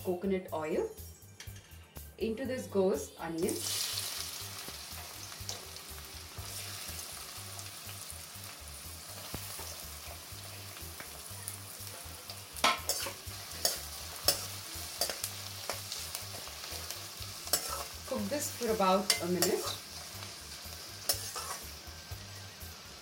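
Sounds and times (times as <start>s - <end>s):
onion sizzling in oil: 3.3s - 23.0s
spatula scraping pan: 12.6s - 20.0s, 21.0s - 21.7s.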